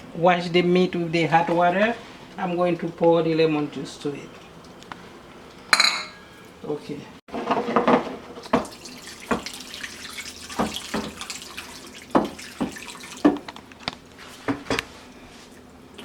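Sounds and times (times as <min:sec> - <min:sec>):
meat splashing and knocking: 0:07.8 - 0:14.8
water running into a bowl: 0:08.4 - 0:14.2.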